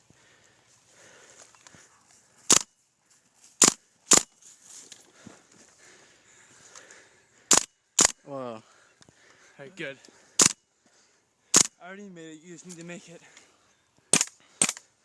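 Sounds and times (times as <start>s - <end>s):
airsoft gun shots: 2.5s - 2.7s, 3.6s - 4.3s, 7.5s - 8.2s, 10.4s - 10.6s, 11.5s - 11.7s, 14.1s - 14.8s.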